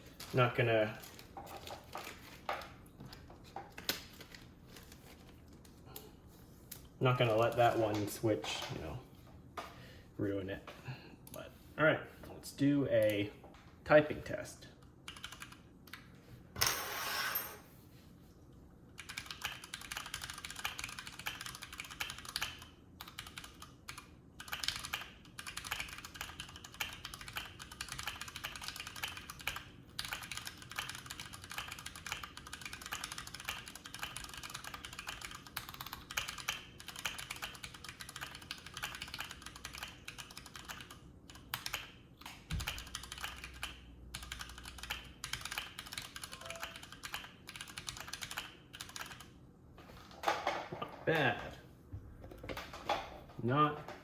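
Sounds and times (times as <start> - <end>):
mechanical keyboard typing: 15.1 - 16.1, 19.0 - 49.4.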